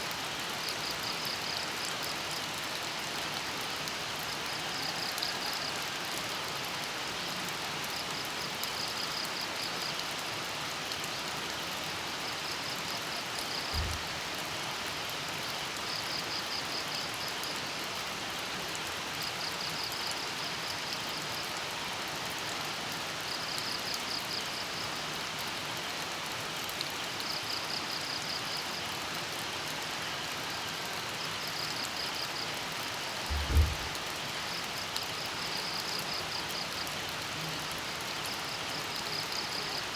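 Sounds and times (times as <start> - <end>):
steady rain falling: 0.0 - 39.9
dull low thumps: 33.3 - 33.9.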